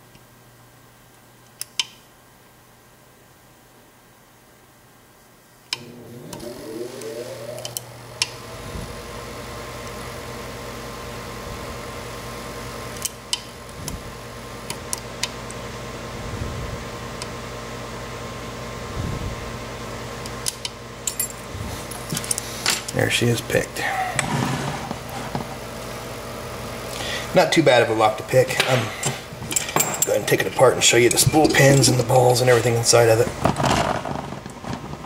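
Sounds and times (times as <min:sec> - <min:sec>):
small electric motor humming: 0:05.8 - 0:09.0.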